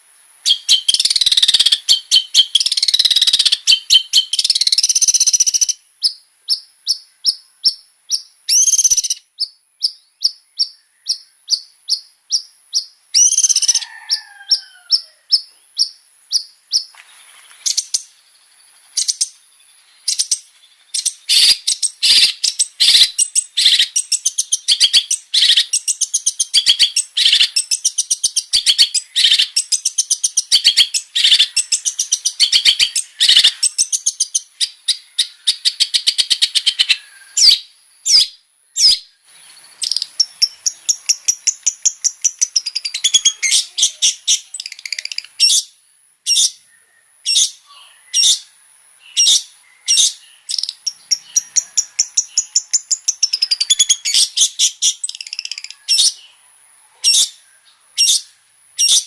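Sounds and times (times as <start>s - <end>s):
shrike singing chattering runs: 38.8s - 45.6s.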